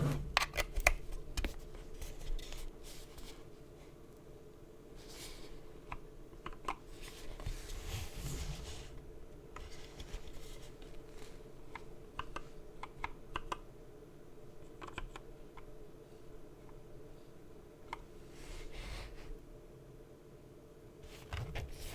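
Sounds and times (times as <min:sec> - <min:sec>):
rustling noise: 0:07.2 - 0:09.0.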